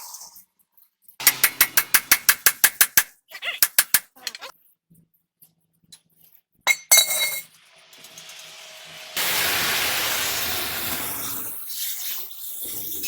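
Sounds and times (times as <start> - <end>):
metallic clicks and clinks: 0.7 - 4.5
loud hissing spray: 7.7 - 12.8.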